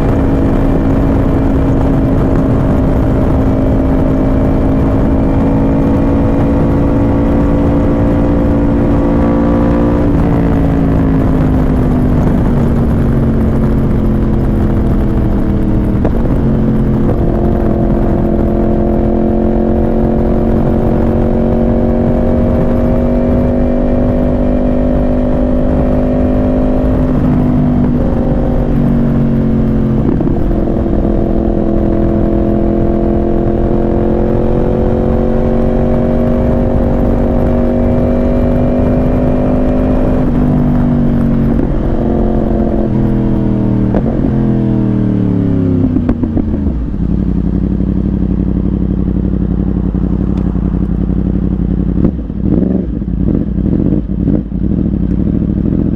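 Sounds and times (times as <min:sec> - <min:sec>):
low rush of wind: 0:00.0 - 0:55.9
motorcycle engine running: 0:00.0 - 0:55.9.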